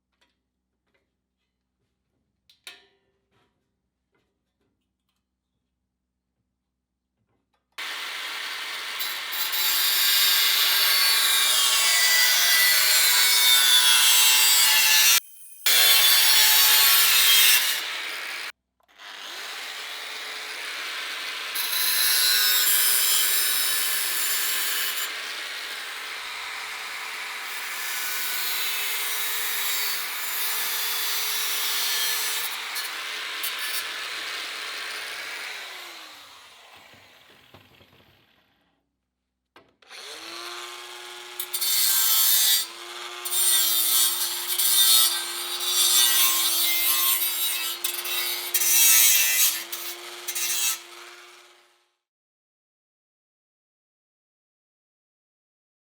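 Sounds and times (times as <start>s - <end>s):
power tool grinding sheet steel: 7.8s - 38.4s, 39.9s - 51.8s.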